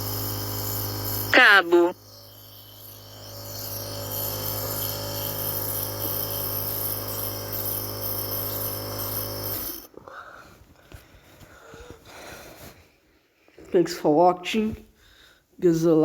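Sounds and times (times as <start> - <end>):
nebulizer motor humming and hissing: 0.0 - 10.0.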